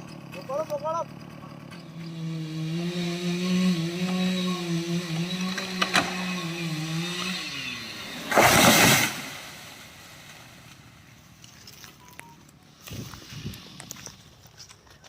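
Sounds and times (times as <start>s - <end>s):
chainsaw running: 0.0s - 10.9s.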